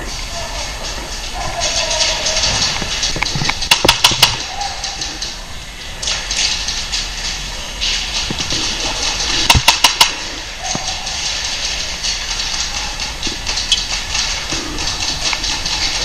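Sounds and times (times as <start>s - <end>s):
airsoft gun shots: 9.4s - 10.4s.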